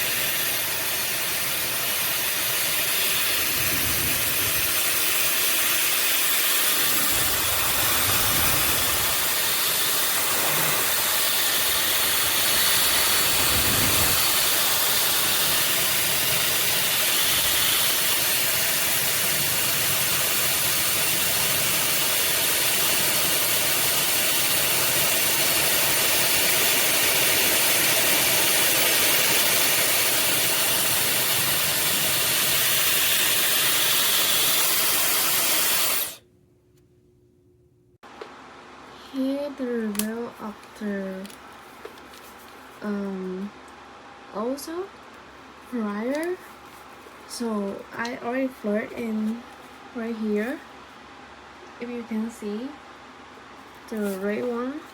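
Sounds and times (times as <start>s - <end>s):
hair dryer blowing: 0.0s - 36.2s.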